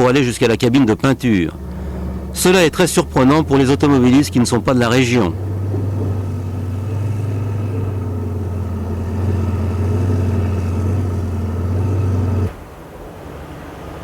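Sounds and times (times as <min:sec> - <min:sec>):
vehicle engine drone: 0:00.0 - 0:14.0.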